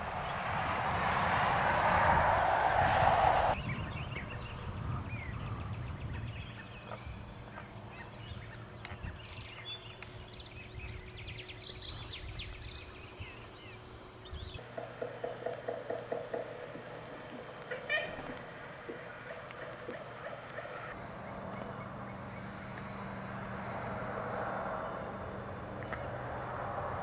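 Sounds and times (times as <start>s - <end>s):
burst of rushing noise: 0.0s - 3.6s
birds chirping and trilling: 3.5s - 26.7s
pulsed bird calls: 15.9s - 23.6s.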